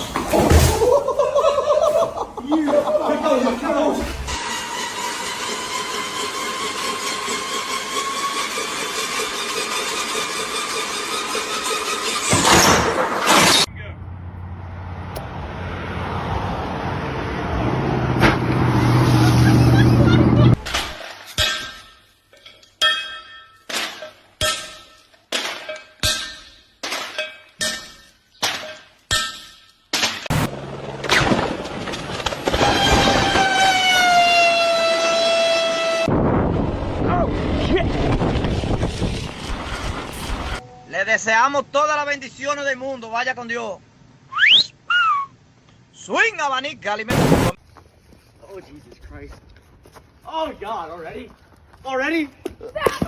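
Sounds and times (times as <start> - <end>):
metal being struck: 26.0 - 30.5.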